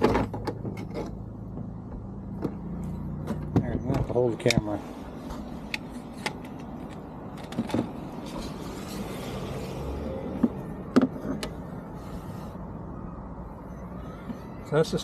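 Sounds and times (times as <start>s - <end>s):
handling knocks and clicks: 0.0s - 8.5s.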